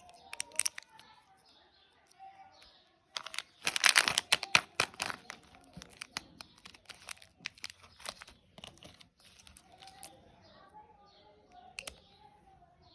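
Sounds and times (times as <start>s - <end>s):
candy wrapper crinkling: 0.0s - 1.4s, 3.1s - 10.2s.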